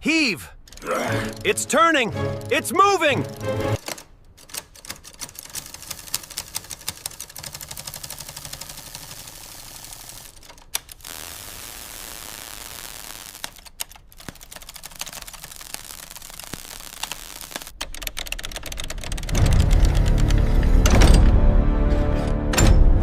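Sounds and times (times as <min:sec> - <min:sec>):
mechanical typewriter clattering: 0:03.8 - 0:11.0, 0:13.4 - 0:16.2, 0:17.8 - 0:21.3.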